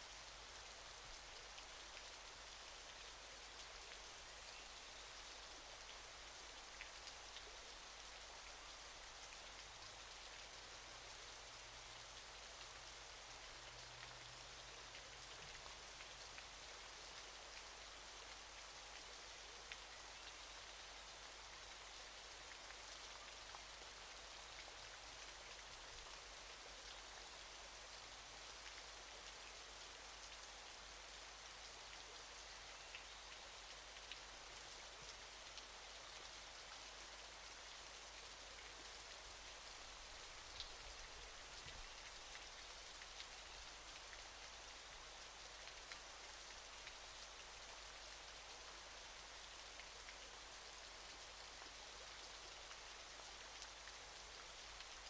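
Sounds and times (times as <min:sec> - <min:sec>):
waterfall hiss: 0:00.0 - 0:16.8.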